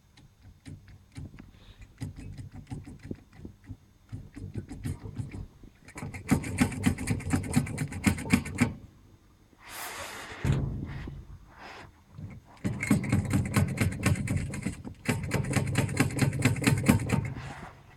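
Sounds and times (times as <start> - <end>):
short hiss: 9.6 - 12.0.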